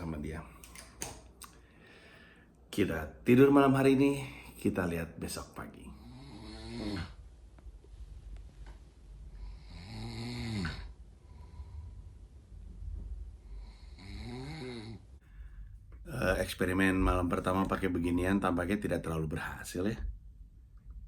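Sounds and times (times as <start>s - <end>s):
man snoring: 6.0s - 7.2s, 9.4s - 11.8s, 13.5s - 15.1s.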